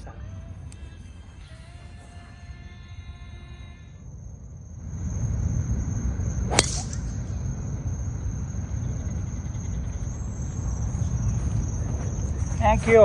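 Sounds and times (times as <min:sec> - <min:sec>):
insect trill: 0:00.0 - 0:13.0
golf club striking ball: 0:06.5 - 0:07.2.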